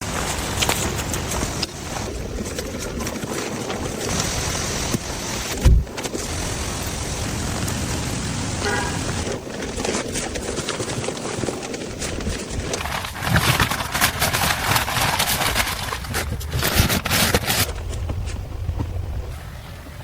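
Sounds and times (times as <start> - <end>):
rain falling on a car: 0.0 - 15.7
short low thump: 5.6 - 5.9.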